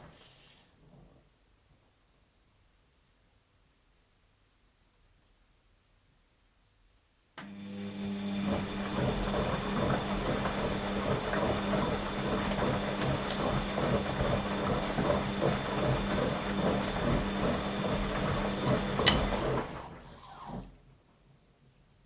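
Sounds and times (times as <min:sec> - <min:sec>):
washing machine running: 0:07.5 - 0:20.8.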